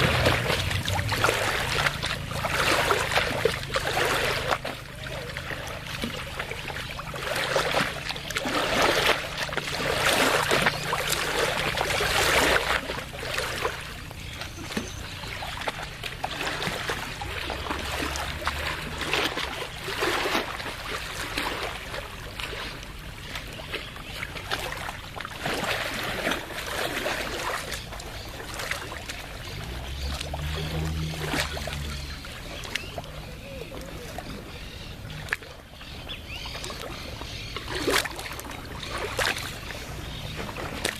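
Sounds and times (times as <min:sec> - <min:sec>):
water lapping and splashing: 0:00.0 - 0:40.9.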